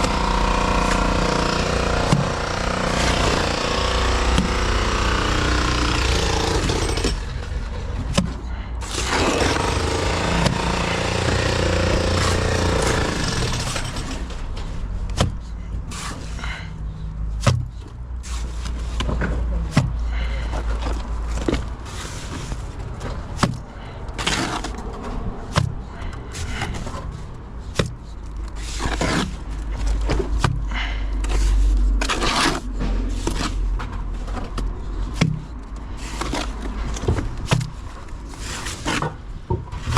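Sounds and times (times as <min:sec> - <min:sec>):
loud machine running: 0:00.0 - 0:07.4, 0:08.8 - 0:14.2.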